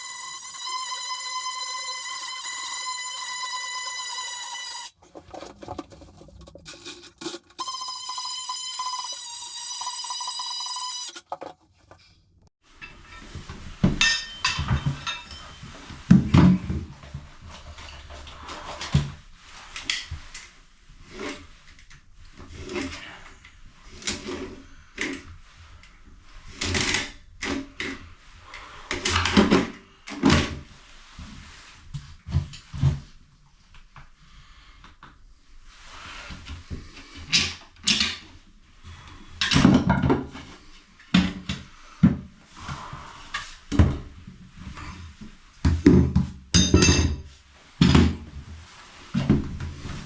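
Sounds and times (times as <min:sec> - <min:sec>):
electronic beep: 0:00.0 - 0:05.0, 0:07.6 - 0:11.2
hard objects knocking and clunking: 0:05.0 - 0:07.8, 0:11.2 - 0:12.1.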